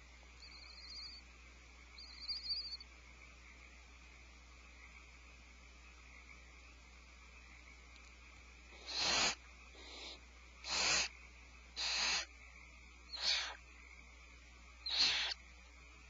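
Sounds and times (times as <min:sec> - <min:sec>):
owls screeching: 0:08.8 - 0:11.1, 0:11.8 - 0:12.3, 0:13.1 - 0:13.6, 0:14.8 - 0:15.4.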